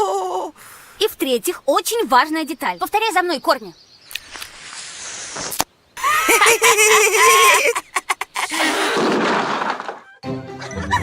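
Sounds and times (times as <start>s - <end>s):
rising hiss: 4.2s - 5.6s.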